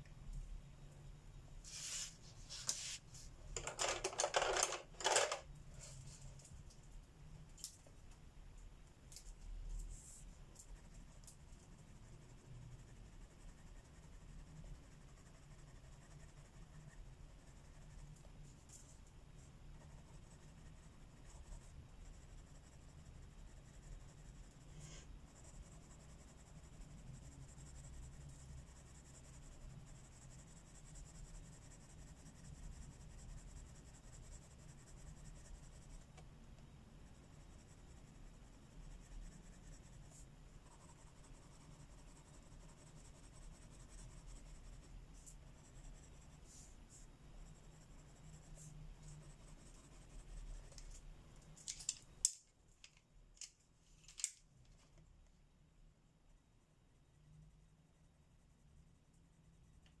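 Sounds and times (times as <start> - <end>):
pencil scratching on paper: 1.6 - 3.3, 9.9 - 36.2, 37.0 - 51.0
light pencil ticks: 10.5 - 11.6.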